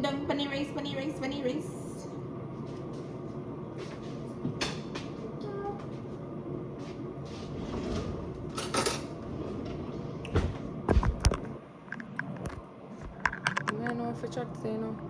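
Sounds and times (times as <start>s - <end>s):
steady low hum: 0.0s - 15.0s
dishes clinking: 8.5s - 9.2s.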